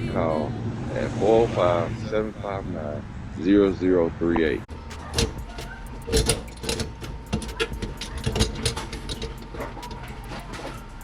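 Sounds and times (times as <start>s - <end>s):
metal hardware clicking and clinking: 4.8s - 11.0s.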